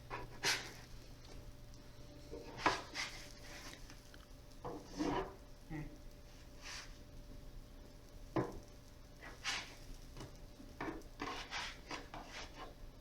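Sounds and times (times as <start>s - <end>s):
spatula scraping on a griddle: 0.0s - 0.8s, 2.3s - 3.8s, 4.6s - 5.4s, 9.2s - 12.8s.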